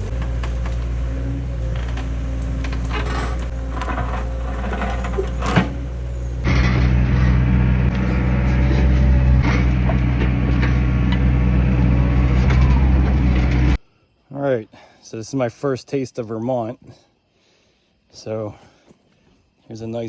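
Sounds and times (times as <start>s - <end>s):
excavator engine running: 0.0s - 13.8s
short metal clanks: 1.7s - 13.8s.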